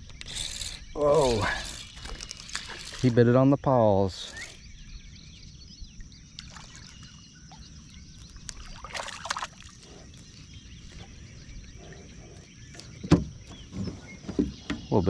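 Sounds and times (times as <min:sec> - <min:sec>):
water splashing and trickling: 0:06.3 - 0:11.1.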